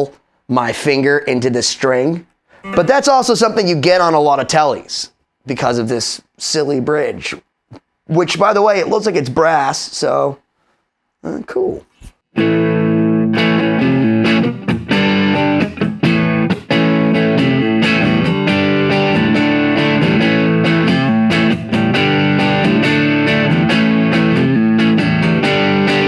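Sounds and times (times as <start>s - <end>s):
electric guitar through amp: 2.6s - 3.3s.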